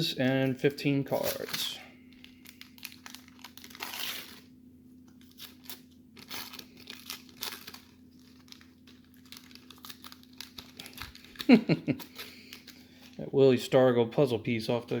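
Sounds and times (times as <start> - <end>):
paper wrapper tearing and crinkling: 1.1 - 4.5, 5.1 - 13.2
cards rustling and clicking: 5.1 - 13.2.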